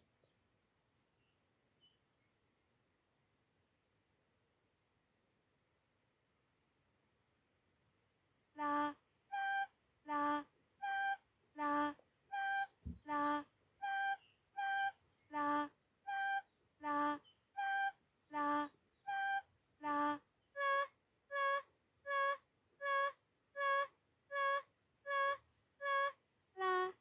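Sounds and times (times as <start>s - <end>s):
flute-like melody: 8.6s - 27.0s.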